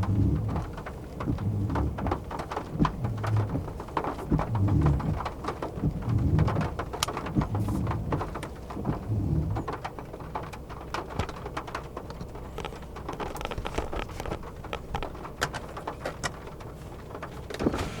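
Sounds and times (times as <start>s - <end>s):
low repeated thuds: 0.0s - 12.0s
raindrops tapping on a surface: 0.0s - 18.0s.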